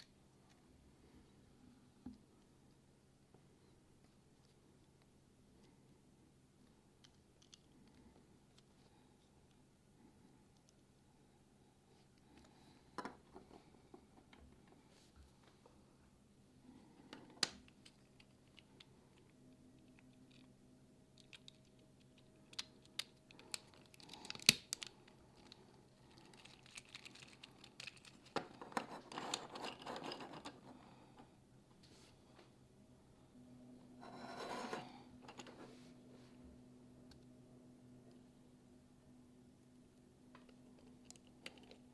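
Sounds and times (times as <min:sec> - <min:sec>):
plastic parts clicking: 0:21.2 - 0:30.6.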